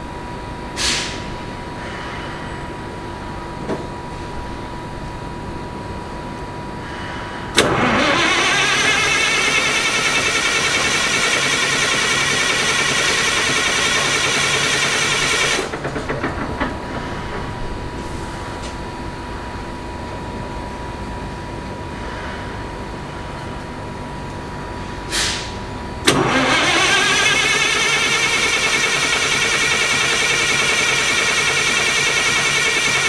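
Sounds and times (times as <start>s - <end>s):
starter motor cranking engine: 7.6s - 18.0s, 26.0s - 33.0s.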